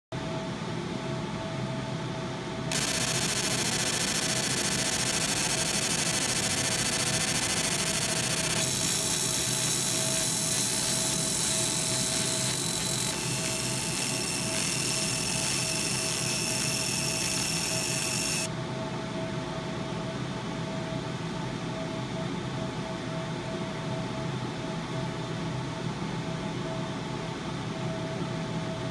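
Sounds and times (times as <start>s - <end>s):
steady low hum: 2.4s - 18.5s
machine hissing and whining: 2.7s - 18.5s.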